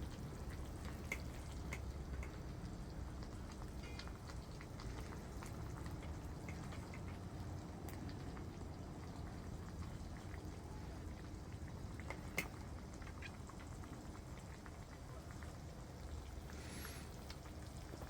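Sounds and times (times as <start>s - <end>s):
pot simmering with soft bubbling: 0.0s - 18.0s
small ticks: 3.5s - 8.4s.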